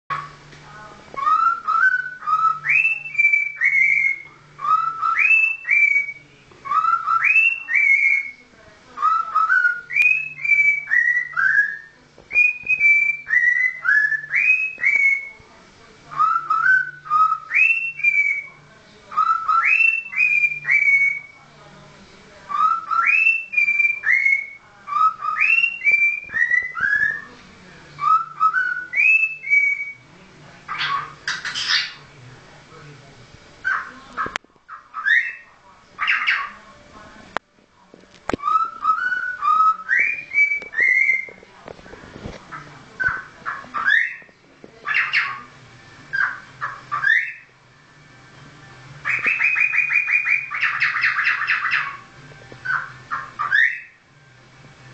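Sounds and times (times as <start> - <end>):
cockatiel whistling a tune: 1.2 - 8.4, 9.0 - 15.4, 16.1 - 21.4, 22.5 - 27.3, 28.0 - 30.1, 30.7 - 32.0, 34.9 - 36.5, 38.3 - 41.4, 43.0 - 45.5, 46.1 - 47.5, 49.0 - 52.0, 52.6 - 54.0.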